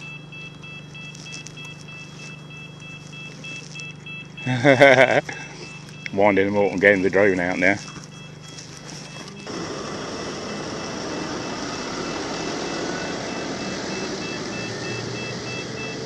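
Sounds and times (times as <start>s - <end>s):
faint regular beeping: 0.0s - 16.0s
camera drone propellers spinning: 7.1s - 16.0s.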